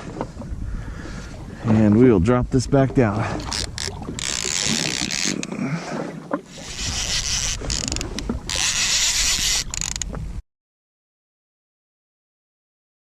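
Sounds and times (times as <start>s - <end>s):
water rushing and splashing: 0.0s - 10.4s
wind on microphone: 0.0s - 10.4s.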